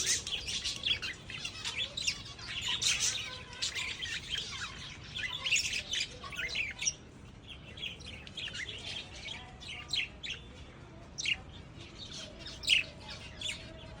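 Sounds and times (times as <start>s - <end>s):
lovebirds chirping: 0.0s - 14.0s.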